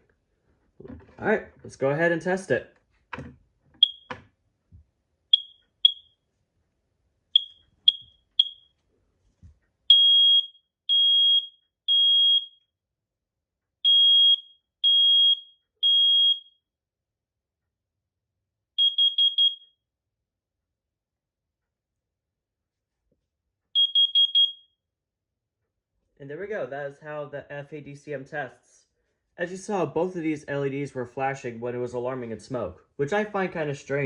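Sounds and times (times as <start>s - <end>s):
smoke alarm long beeps: 3.8s - 4.1s, 5.3s - 6.2s, 7.4s - 8.8s, 9.9s - 12.7s, 13.8s - 16.7s, 18.8s - 19.8s, 23.7s - 24.8s
smoke alarm short beeps: 3.8s - 4.1s, 5.3s - 6.1s, 7.4s - 8.7s, 9.9s - 12.6s, 13.9s - 16.6s, 18.8s - 19.7s, 23.8s - 24.6s
smoke alarm chirps: 3.8s - 4.2s, 5.3s - 6.2s, 7.4s - 8.8s, 9.9s - 12.7s, 13.8s - 16.6s, 18.8s - 19.8s, 23.7s - 24.8s.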